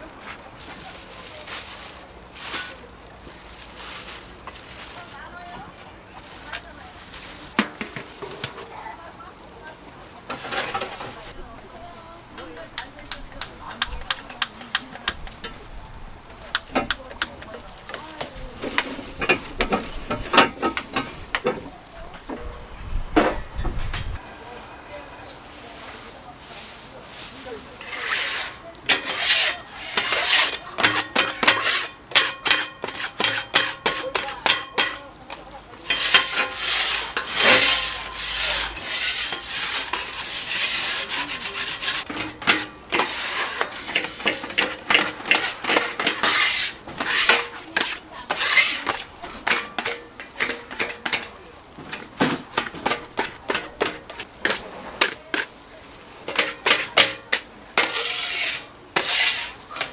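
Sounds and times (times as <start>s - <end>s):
metal spatulas scraping a griddle: 2.4s - 2.9s, 10.3s - 22.5s, 27.2s - 59.9s.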